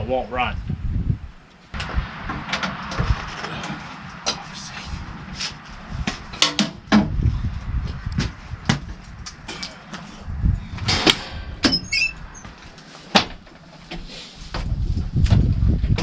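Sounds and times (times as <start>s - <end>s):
low rumble: 0.0s - 16.0s
brief high squeak: 11.7s - 12.5s.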